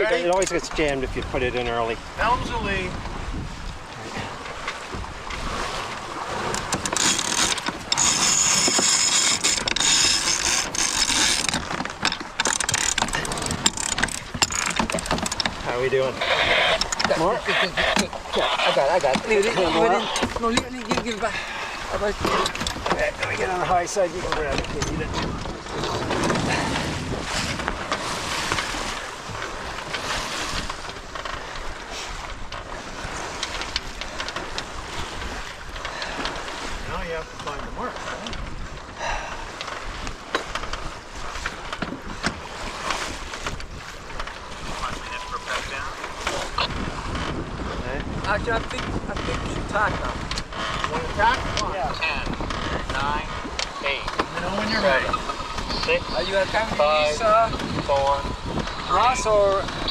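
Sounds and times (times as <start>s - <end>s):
water rushing along hull: 0.0s - 59.9s
wind buffeting microphone: 0.0s - 59.9s
winch ratcheting clicks: 6.4s - 15.6s, 16.4s - 17.2s, 22.2s - 23.0s.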